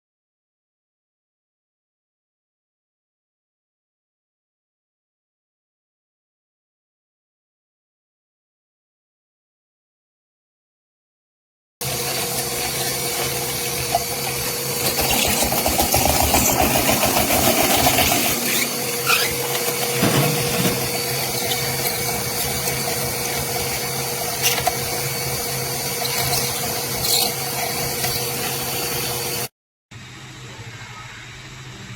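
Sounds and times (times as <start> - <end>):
stand mixer motor humming: 11.8 - 29.5.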